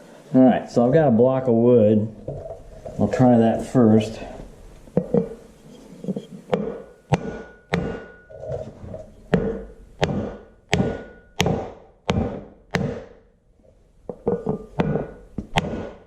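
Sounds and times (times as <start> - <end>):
hammer striking wood block: 6.5 - 8.3, 9.3 - 13.2, 14.1 - 16.0.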